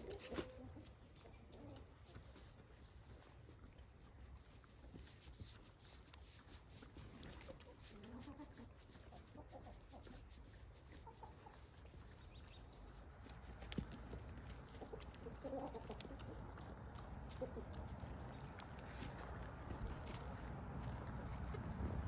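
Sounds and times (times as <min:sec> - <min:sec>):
chickens clucking: 0:00.0 - 0:02.0, 0:07.4 - 0:10.3, 0:10.9 - 0:11.6, 0:14.4 - 0:18.6.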